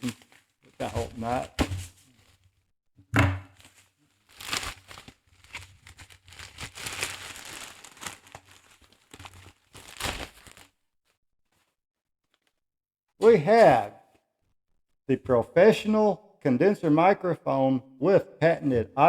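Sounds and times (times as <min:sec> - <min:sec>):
plastic bag tearing and crinkling: 0:00.0 - 0:01.6, 0:03.6 - 0:10.7
thump: 0:03.1 - 0:03.5.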